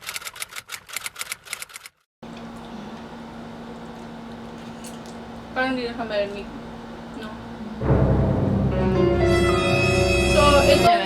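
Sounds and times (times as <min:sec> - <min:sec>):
air conditioner hum: 0:02.2 - 0:11.0.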